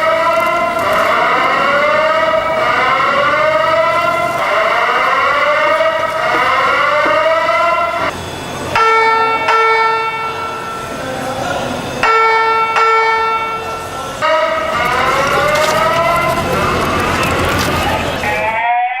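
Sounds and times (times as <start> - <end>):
fire alarm chime strikes: 1.2 - 11.1, 11.8 - 14.8.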